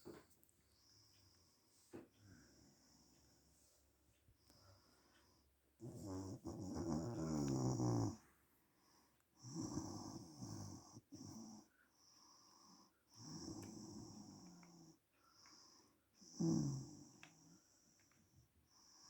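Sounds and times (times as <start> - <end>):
woman snoring: 5.8 - 8.2, 9.4 - 11.3, 13.2 - 14.5, 16.2 - 17.1.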